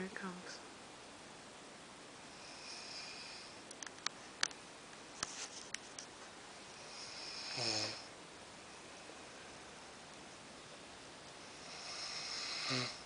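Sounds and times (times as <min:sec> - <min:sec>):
man snoring: 0:02.4 - 0:03.5, 0:06.8 - 0:08.1, 0:11.6 - 0:13.0
sharp clicks: 0:03.7 - 0:04.6.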